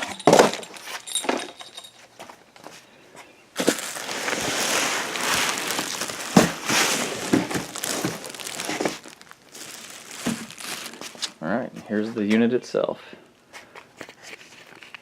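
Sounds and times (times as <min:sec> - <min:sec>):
packaging crinkling and rustling: 0:03.6 - 0:11.4, 0:13.6 - 0:15.0.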